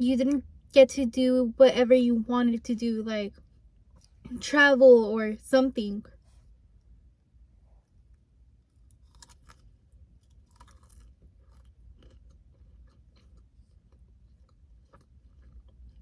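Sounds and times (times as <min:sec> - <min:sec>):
low steady hum: 0:00.0 - 0:16.0
chewing food: 0:08.7 - 0:16.0.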